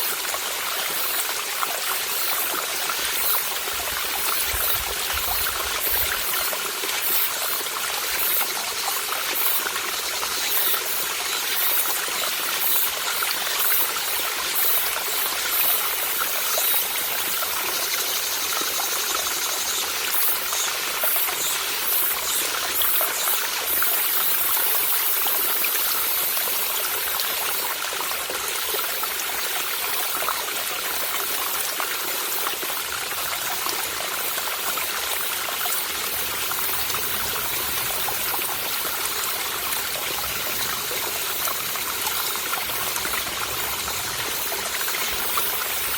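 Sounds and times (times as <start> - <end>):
stream babbling over rocks: 0.0 - 45.9
cicada buzz: 1.0 - 27.6.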